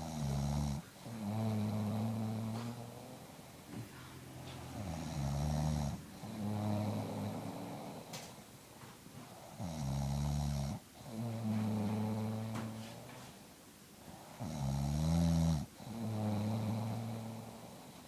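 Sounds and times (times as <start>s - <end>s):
woman snoring: 0.0s - 3.3s, 4.8s - 8.2s, 14.3s - 18.0s.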